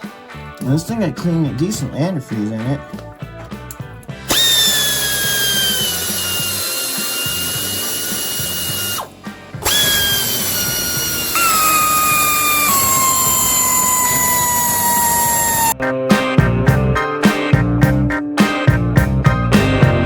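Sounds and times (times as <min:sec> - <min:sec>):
power drill motor whining: 0:04.3 - 0:15.8.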